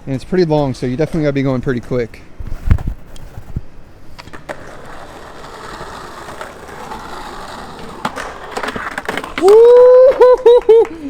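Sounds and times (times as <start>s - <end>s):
skateboard rolling: 0.8s - 11.0s
skateboard clicks: 4.1s - 11.0s.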